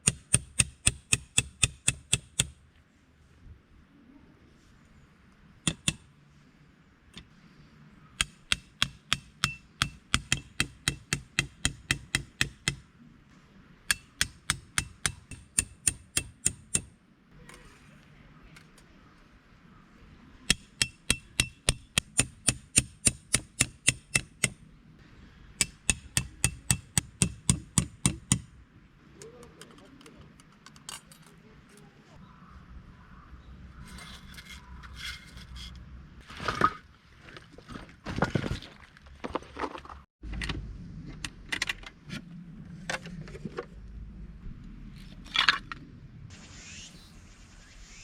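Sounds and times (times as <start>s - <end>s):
hammer striking metal tent pegs: 0.0s - 2.6s, 5.7s - 6.0s, 8.2s - 12.8s, 13.9s - 16.9s, 20.5s - 24.6s, 25.6s - 28.5s.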